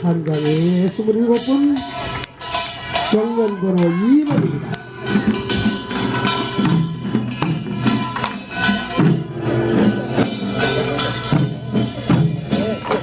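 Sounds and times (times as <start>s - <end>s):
folk percussion band playing: 0.0s - 13.0s
gongs and drums striking: 0.0s - 13.0s.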